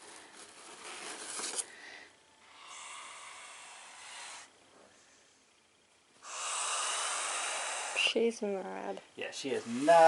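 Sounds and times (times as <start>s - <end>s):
snake hissing: 2.4s - 4.6s, 6.2s - 8.3s, 9.5s - 10.0s.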